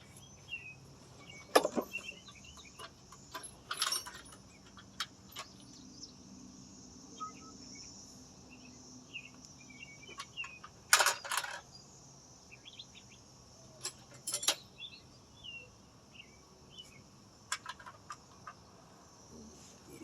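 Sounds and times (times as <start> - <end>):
birds chirping: 0.0 - 20.0
insect drone: 0.0 - 20.0
metal tools clinking: 1.3 - 5.8, 10.0 - 11.6, 13.8 - 14.7, 17.5 - 18.4.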